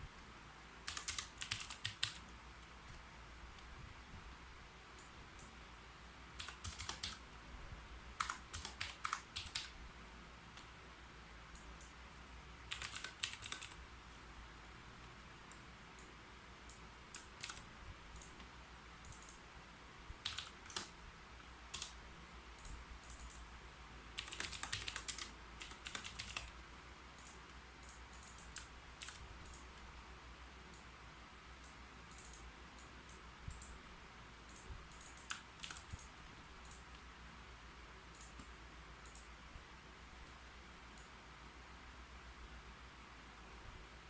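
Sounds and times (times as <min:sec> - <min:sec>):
typing on a keyboard: 0:00.9 - 0:02.3, 0:06.4 - 0:07.2, 0:08.2 - 0:09.8, 0:12.7 - 0:13.8, 0:16.7 - 0:18.5, 0:19.1 - 0:19.4, 0:20.2 - 0:21.0, 0:21.7 - 0:22.0, 0:22.6 - 0:23.5, 0:24.2 - 0:26.6, 0:27.2 - 0:29.8, 0:32.1 - 0:33.8, 0:34.5 - 0:36.9.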